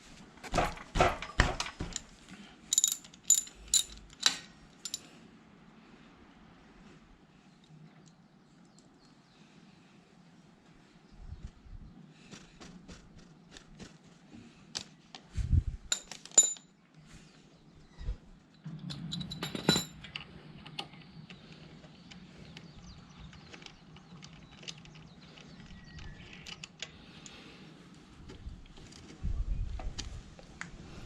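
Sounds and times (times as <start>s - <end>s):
small metal objects clinking: 2.7s - 5.1s, 15.9s - 16.7s.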